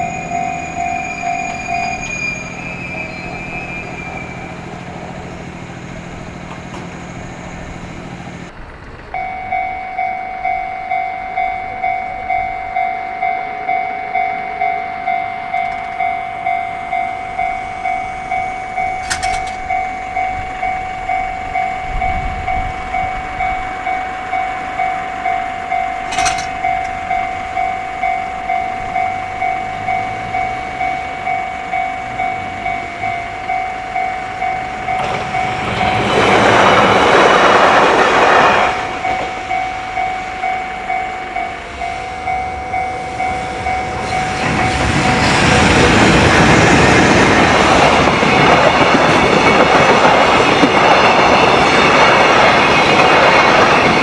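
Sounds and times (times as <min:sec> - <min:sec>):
crossing warning bell ringing: 0:00.0 - 0:54.0
train cars rumbling: 0:00.0 - 0:54.0.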